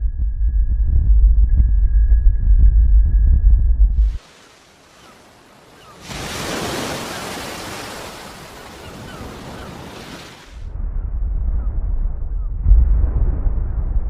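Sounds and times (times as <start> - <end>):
deep rumble: 0.0 - 4.2, 10.6 - 14.0.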